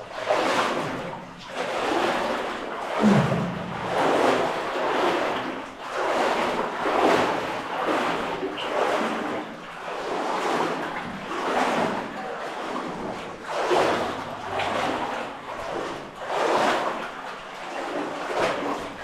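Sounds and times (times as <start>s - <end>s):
water splashing in stream: 0.0s - 19.0s.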